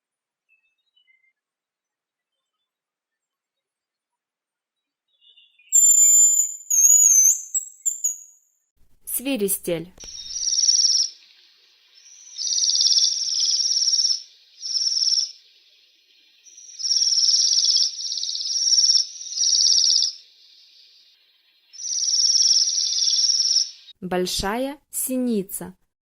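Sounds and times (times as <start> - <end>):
bird high thin trilling calls: 5.6 - 8.4, 10.0 - 11.2, 12.0 - 15.3, 16.4 - 20.2, 21.8 - 23.9.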